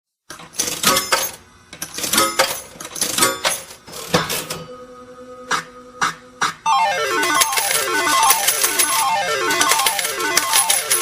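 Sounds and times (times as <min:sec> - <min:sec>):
steady held tone: 0:04.6 - 0:11.0.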